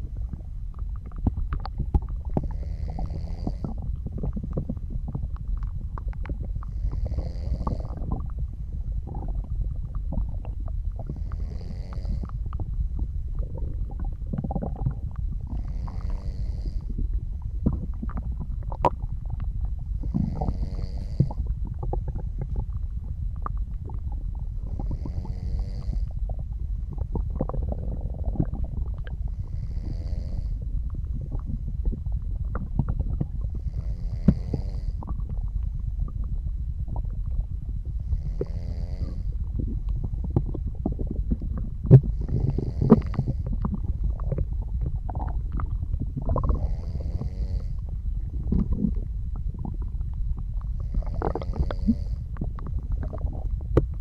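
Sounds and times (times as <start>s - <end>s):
stomach gurgling and rumbling: 0.0s - 54.0s
soft snoring breath: 2.4s - 3.8s, 6.6s - 8.2s, 11.0s - 12.4s, 15.5s - 17.1s, 20.0s - 21.4s, 24.7s - 26.2s, 29.3s - 30.7s, 33.5s - 35.1s, 38.0s - 40.2s, 42.0s - 43.7s, 46.4s - 47.9s, 50.8s - 52.3s.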